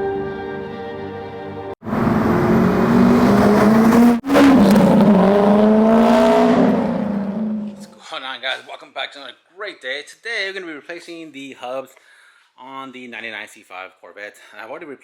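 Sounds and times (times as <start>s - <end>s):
car engine accelerating: 1.8s - 8.0s.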